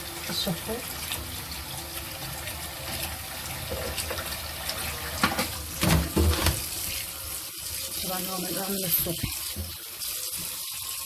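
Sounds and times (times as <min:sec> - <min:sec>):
tap running into sink: 0:02.2 - 0:07.0, 0:08.9 - 0:10.9.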